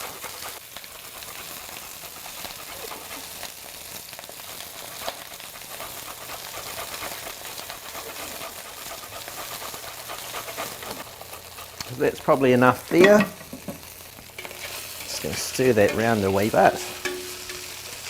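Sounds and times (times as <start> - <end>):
ginger being grated: 0.0 - 13.5, 14.2 - 18.0
garlic sizzling in a pan: 0.0 - 18.0.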